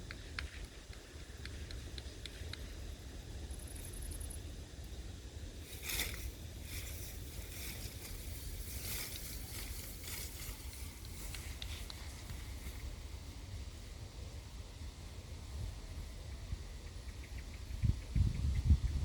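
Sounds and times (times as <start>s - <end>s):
animals chewing leaves: 5.6s - 13.0s.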